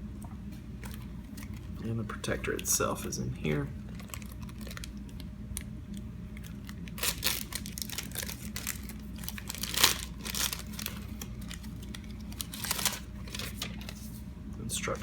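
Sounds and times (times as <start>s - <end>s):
packaging crinkling and tearing: 0.8s - 1.9s, 3.5s - 14.2s.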